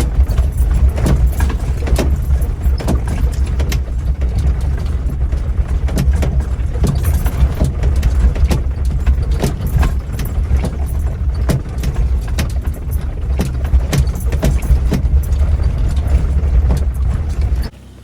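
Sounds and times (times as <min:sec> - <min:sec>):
clicks and rattles: 0:00.0 - 0:17.7
car engine rumble in cabin: 0:00.0 - 0:18.0.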